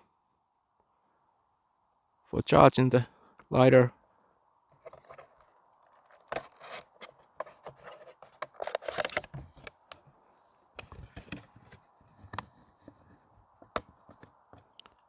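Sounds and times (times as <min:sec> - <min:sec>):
packaging rustling: 0:04.8 - 0:09.7.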